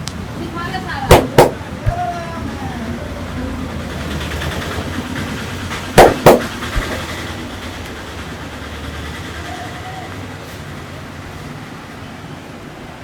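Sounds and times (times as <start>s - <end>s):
street traffic noise: 0.0s - 13.0s
loud sharp smacks: 1.1s - 2.1s, 6.0s - 7.2s.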